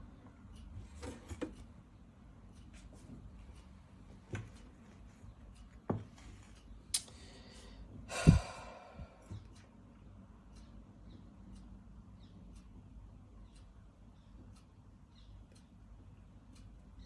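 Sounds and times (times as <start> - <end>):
person sighing heavily: 7.4 - 9.4.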